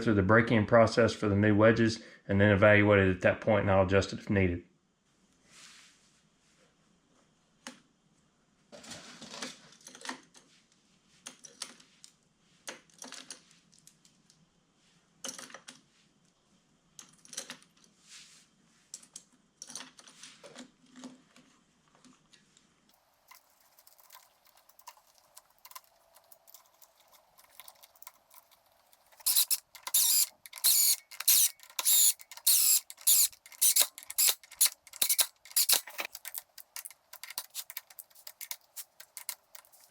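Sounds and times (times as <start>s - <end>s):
metal tools clinking and clicking: 26.4s - 39.9s.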